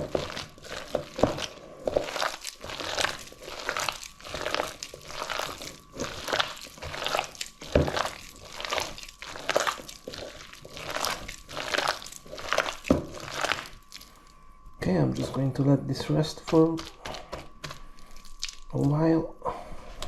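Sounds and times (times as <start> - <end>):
batter squeezed by hand in bowl: 0.0 - 14.1.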